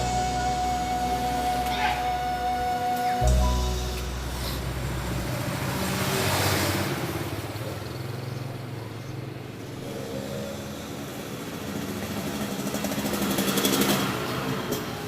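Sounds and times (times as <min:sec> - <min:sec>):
vehicle engine passing by: 0:00.0 - 0:08.9.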